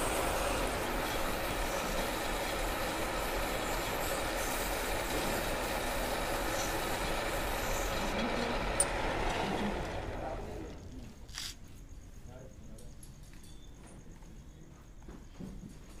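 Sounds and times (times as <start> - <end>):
lathe sanding with grinding hiss: 0.0 - 8.8.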